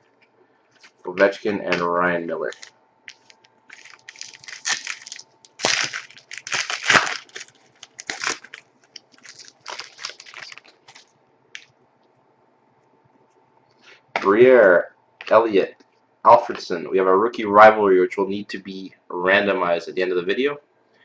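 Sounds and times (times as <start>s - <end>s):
card pack wrapper crinkling: 0.8s - 11.7s.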